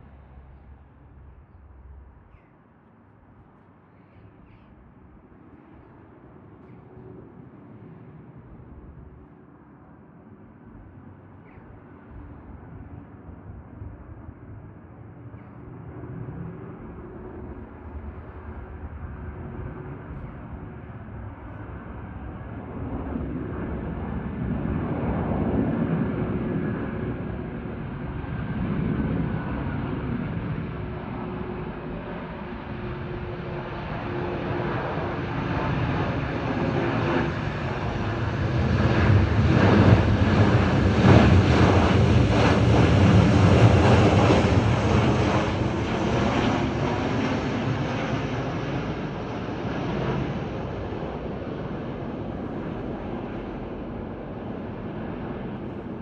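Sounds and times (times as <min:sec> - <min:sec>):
jet aircraft engine rumble: 0:10.4 - 0:56.0.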